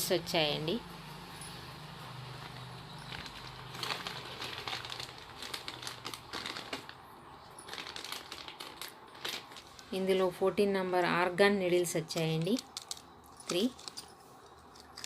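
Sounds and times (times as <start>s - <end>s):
plastic packaging crinkling: 2.3s - 10.3s, 12.1s - 15.0s.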